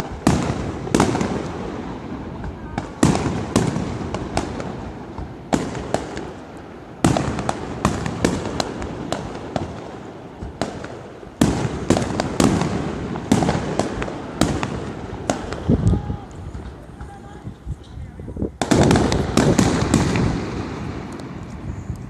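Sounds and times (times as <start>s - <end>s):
gunpowder bangs with echo: 2.4s - 6.4s, 7.0s - 15.7s, 18.6s - 21.4s.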